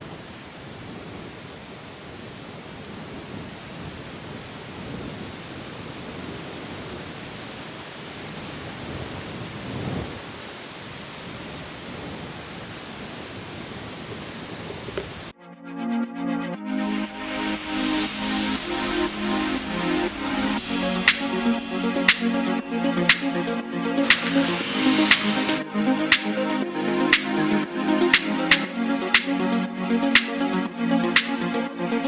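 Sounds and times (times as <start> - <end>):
rushing outdoor noise: 18.7 - 32.0.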